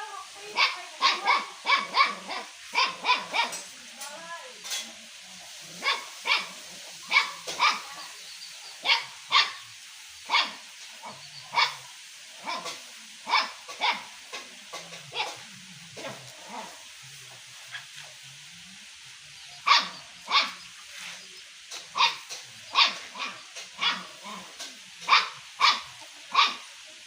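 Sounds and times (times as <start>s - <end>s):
dog barking: 0.5s - 3.7s, 5.8s - 8.0s, 8.8s - 9.6s, 10.3s - 11.8s, 12.4s - 14.2s, 15.1s - 16.7s, 19.6s - 20.6s, 21.9s - 26.7s.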